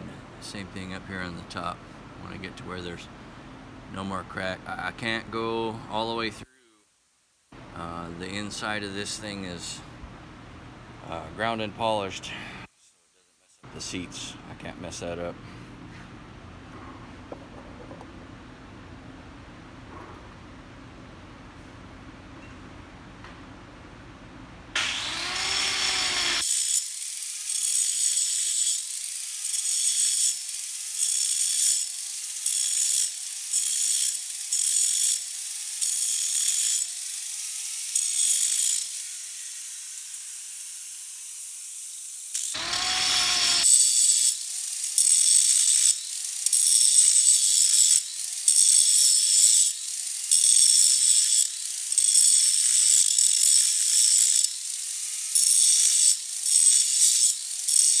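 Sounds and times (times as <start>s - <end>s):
grinder grinding steel: 24.8s - 58.0s.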